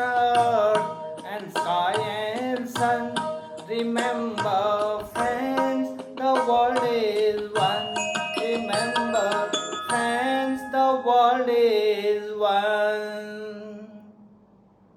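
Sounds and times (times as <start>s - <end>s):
drum strokes: 0.0s - 10.3s.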